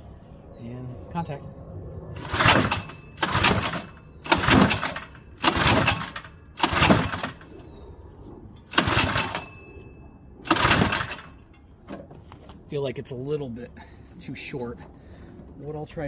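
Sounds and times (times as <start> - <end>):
pull-starter rope whirring: 2.2 - 7.6, 8.6 - 9.6, 10.4 - 12.1.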